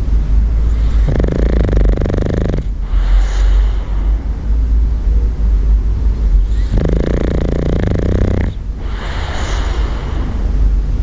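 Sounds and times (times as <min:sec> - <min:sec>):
steady low rumble: 0:00.0 - 0:11.0
dog snoring: 0:00.7 - 0:03.8, 0:06.4 - 0:09.8.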